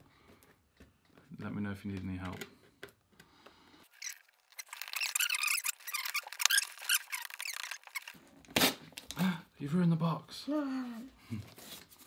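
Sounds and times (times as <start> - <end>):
cardboard scraping and squeaking: 3.9 - 8.4
cardboard ripping: 4.0 - 9.0.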